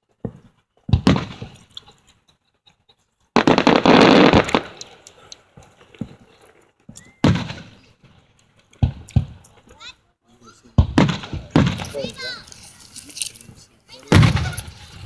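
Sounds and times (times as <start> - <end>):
fireworks bangs: 0.3 - 1.9, 3.4 - 6.5, 7.1 - 8.2, 10.8 - 15.0.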